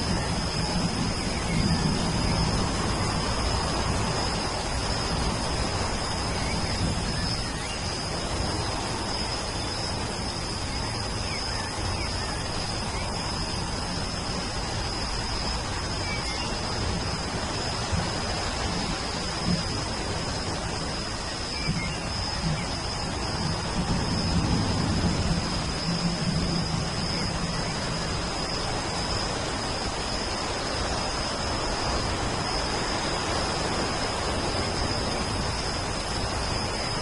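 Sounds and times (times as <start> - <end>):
thunder rumble: 0.0 - 9.1, 16.7 - 37.0
rain falling: 16.6 - 36.8
faint bird chirps: 21.2 - 23.0.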